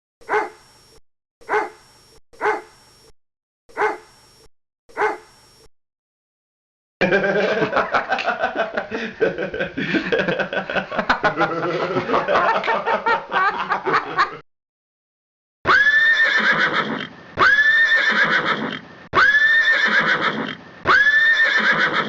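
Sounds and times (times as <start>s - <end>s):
dog barking: 0.2s - 0.6s, 1.4s - 1.8s, 2.4s - 2.7s, 3.7s - 4.1s, 4.9s - 5.3s.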